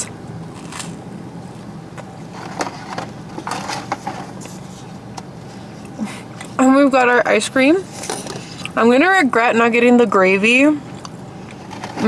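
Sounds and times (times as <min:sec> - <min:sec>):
steady low hum: 0:00.0 - 0:12.0
paper packaging rustling: 0:02.3 - 0:04.9.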